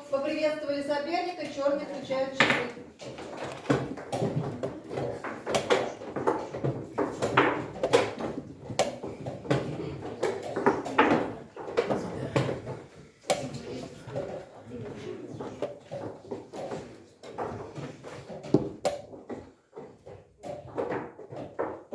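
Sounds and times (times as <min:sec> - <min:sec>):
murmur of room: 0:00.0 - 0:21.9
chess pieces clacking on boards: 0:02.4 - 0:21.9.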